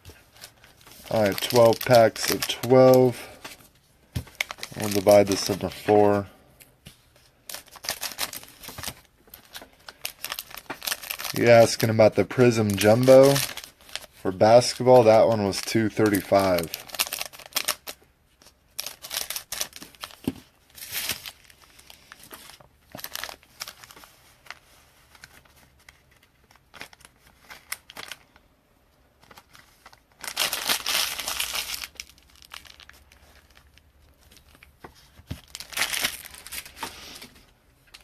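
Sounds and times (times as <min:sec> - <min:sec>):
wrappers torn and crinkled: 0:00.2 - 0:03.4, 0:04.3 - 0:06.2, 0:07.4 - 0:18.0, 0:18.7 - 0:20.2, 0:20.8 - 0:28.4, 0:29.2 - 0:36.8.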